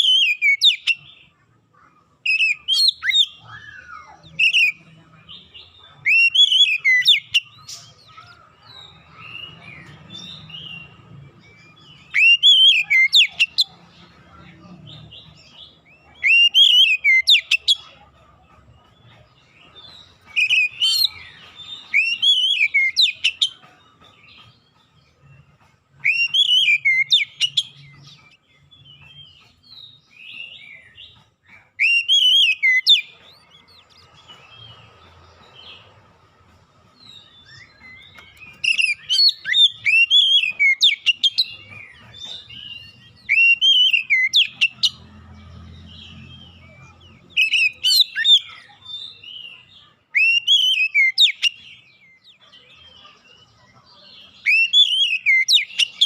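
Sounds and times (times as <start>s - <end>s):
bird singing whistled phrases: 2.2s - 4.8s, 12.0s - 13.7s, 26.0s - 27.8s, 31.8s - 33.1s, 37.3s - 41.6s, 50.1s - 51.7s, 54.4s - 56.0s.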